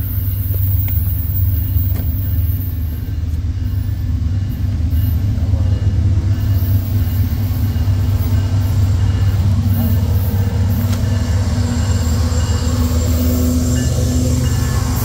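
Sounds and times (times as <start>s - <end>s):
freight train rumbling past: 0.0s - 15.0s.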